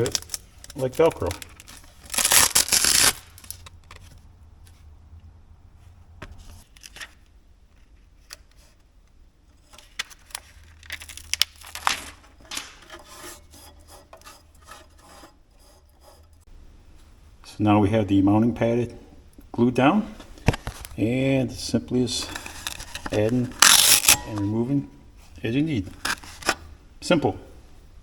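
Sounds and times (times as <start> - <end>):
light rubbing and taps: 12.4 - 16.4.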